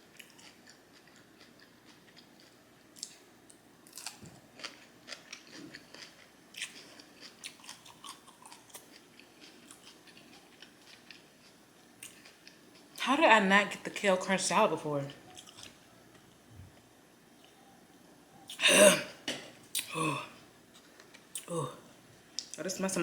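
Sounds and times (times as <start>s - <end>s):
chewing crunchy salad: 0.0s - 13.0s, 15.1s - 17.6s.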